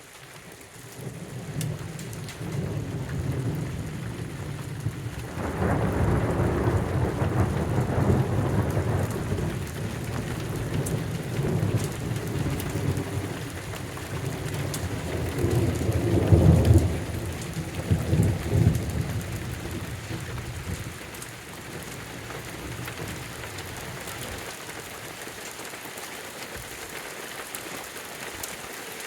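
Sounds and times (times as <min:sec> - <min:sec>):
heavy rain: 0:00.0 - 0:29.0
rolling thunder: 0:01.1 - 0:21.0.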